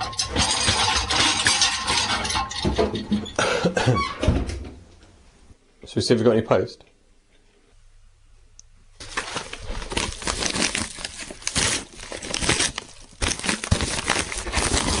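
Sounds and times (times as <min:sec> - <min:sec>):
packaging crinkling and tearing: 0:09.0 - 0:15.0.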